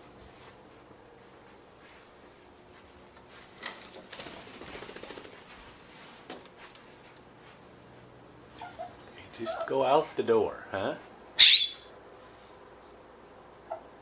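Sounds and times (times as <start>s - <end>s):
bird wings fluttering: 3.8s - 5.9s.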